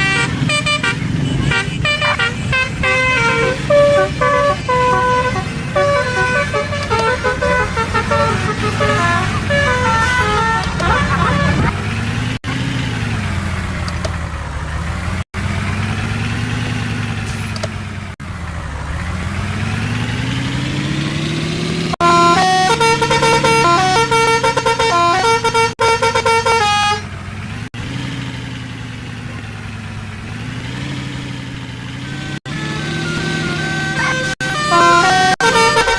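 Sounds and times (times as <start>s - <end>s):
multi-tone musical horn: 0.0s - 11.7s, 22.0s - 27.0s, 33.0s - 35.9s.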